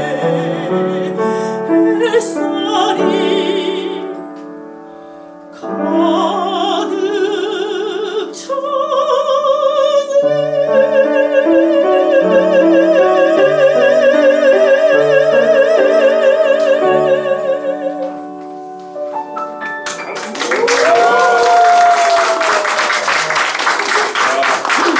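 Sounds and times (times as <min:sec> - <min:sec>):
soprano singing: 0:00.0 - 0:04.5, 0:05.5 - 0:18.6
piano accompaniment: 0:00.0 - 0:24.9.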